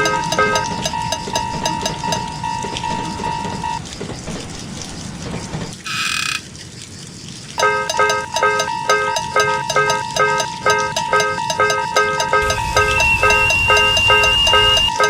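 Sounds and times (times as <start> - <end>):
looping tune: 7.6 - 15.0
short bright tone: 12.4 - 15.0.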